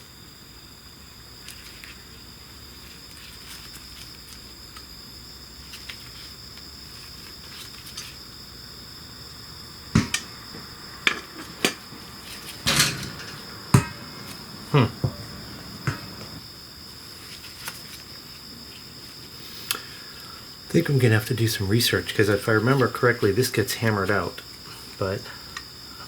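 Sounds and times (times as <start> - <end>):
insects chirring: 0.0 - 26.0
metallic clanks of tools: 12.6 - 14.4.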